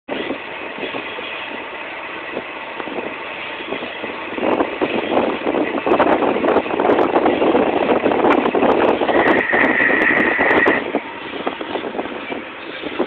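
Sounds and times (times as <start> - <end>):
lathe running: 8.8 - 11.8.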